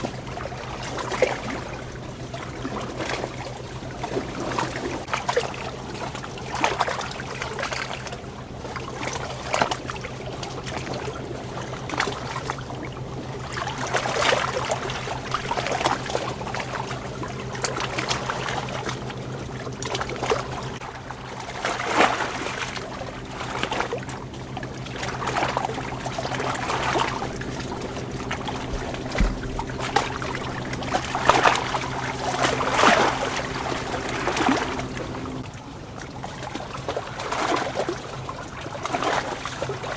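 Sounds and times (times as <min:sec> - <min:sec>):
water splashing and trickling: 0:00.0 - 0:39.9
steady low hum: 0:10.0 - 0:35.5.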